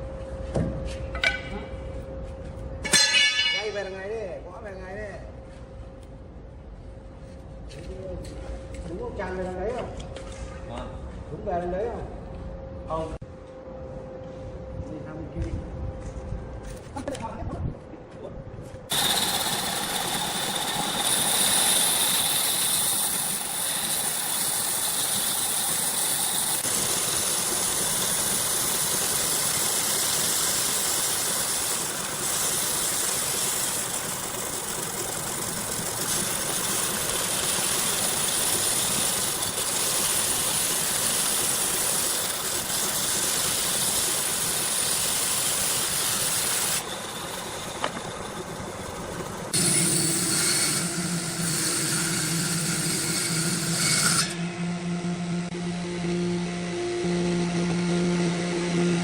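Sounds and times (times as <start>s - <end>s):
power tool whining: 18.9s - 59.0s.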